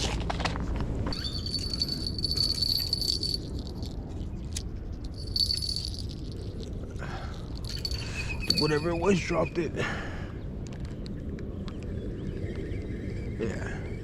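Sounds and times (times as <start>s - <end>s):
fishing reel whirring: 1.2s - 3.4s.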